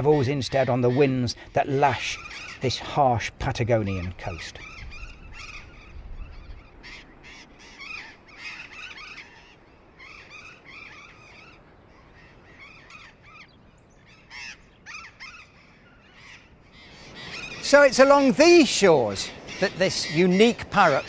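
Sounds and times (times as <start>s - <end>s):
parrots screeching: 2.2s - 2.6s, 4.6s - 11.6s, 14.1s - 18.1s
wind rumble: 3.3s - 21.0s.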